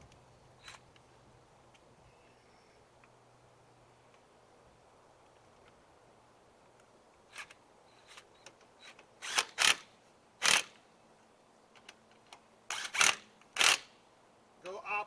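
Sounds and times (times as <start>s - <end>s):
impact wrench bursts: 8.8s - 10.8s, 12.7s - 14.0s.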